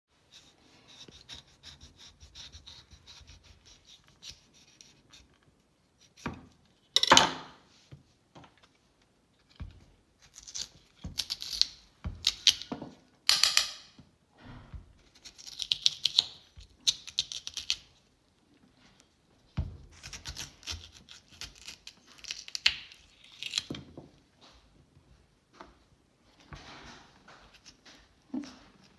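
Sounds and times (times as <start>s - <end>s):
scraping and scratching: 25.6s - 28.9s.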